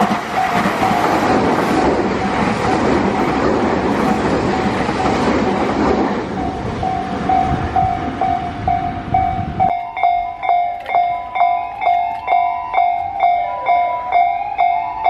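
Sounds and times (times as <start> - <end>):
train rushing past: 0.0 - 10.2
level crossing bell ringing: 6.4 - 15.0.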